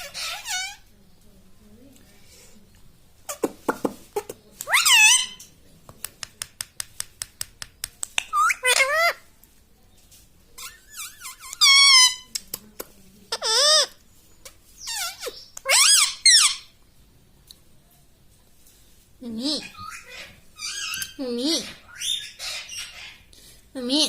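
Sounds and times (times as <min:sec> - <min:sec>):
parakeet squeaky calls: 0:00.0 - 0:00.8, 0:04.7 - 0:05.4, 0:08.3 - 0:09.2, 0:10.6 - 0:12.3, 0:13.3 - 0:13.9, 0:14.8 - 0:16.7, 0:19.5 - 0:23.2.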